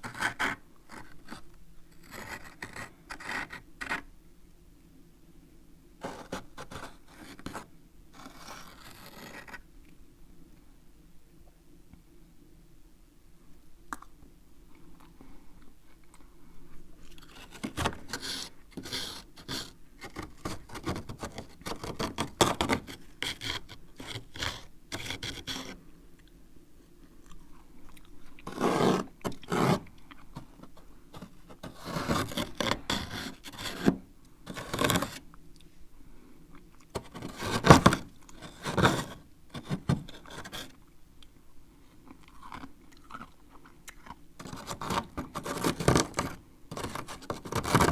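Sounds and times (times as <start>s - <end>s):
spoon scraping frost: 6.0s - 9.6s, 17.1s - 25.8s, 31.2s - 33.9s, 34.5s - 35.2s, 37.0s - 40.8s, 44.4s - 47.9s.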